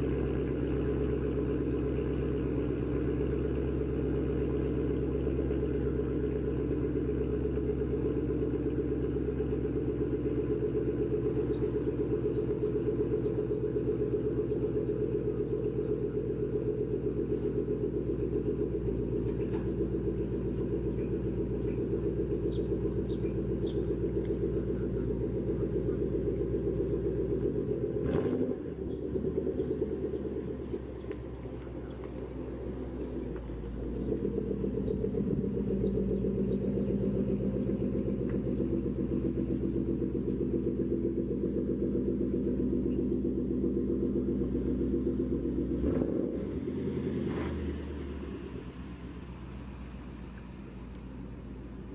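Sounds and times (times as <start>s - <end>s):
car exhaust rumbling: 0.0s - 51.9s.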